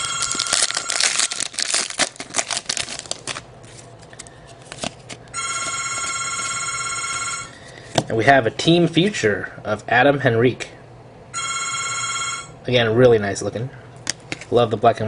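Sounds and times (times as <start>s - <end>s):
electronic telephone ringing: 0.0s - 1.4s, 5.4s - 7.6s, 11.4s - 12.6s
trading cards clicking and rustling: 0.0s - 6.2s.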